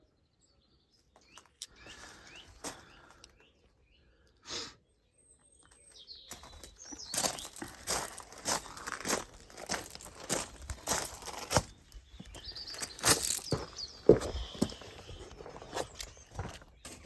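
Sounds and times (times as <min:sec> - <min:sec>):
small birds chirping: 0:00.0 - 0:17.0
loud rustling and crunching: 0:06.3 - 0:17.0.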